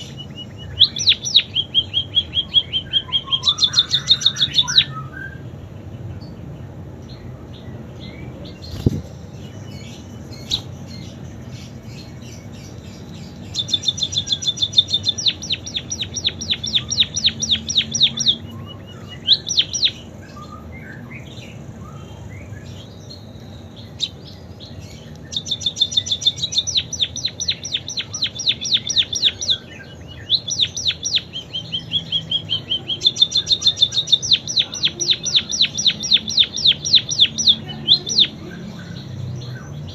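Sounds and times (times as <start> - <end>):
bird singing fast trills: 0.0 - 39.9.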